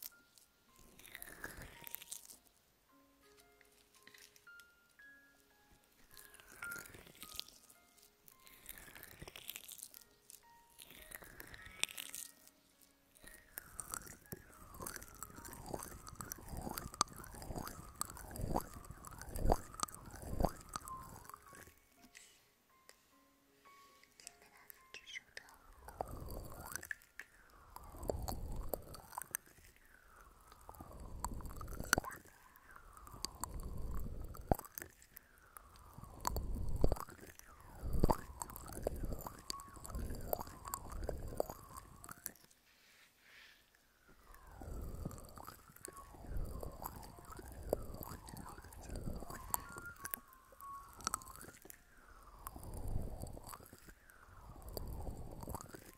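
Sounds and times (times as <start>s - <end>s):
scratching and rubbing on microphone: 13.6s - 21.6s, 25.8s - 26.9s, 27.7s - 35.0s, 35.7s - 42.4s, 44.5s - 51.7s.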